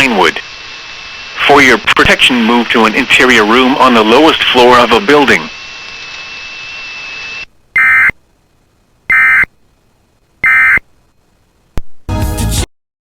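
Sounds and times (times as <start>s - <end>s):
steady hiss: 0.0s - 7.7s
digital data tone bursts: 6.4s - 8.2s, 9.1s - 9.5s, 10.4s - 10.8s.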